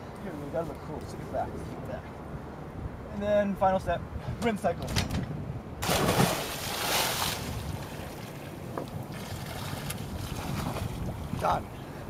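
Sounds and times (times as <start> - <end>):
wind rushing: 5.1 - 8.3
water splash: 5.8 - 8.5.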